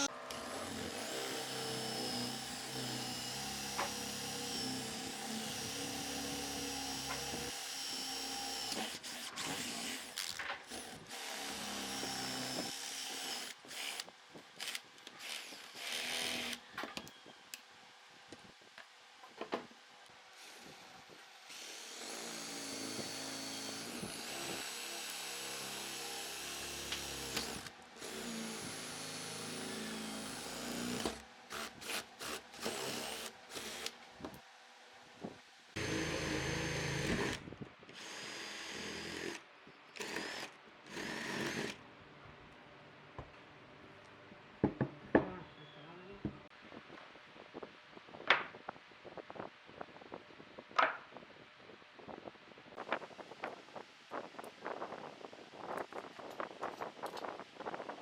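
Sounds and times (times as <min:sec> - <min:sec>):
power tool running: 0:00.0 - 0:16.6, 0:35.8 - 0:37.4, 0:40.0 - 0:41.8.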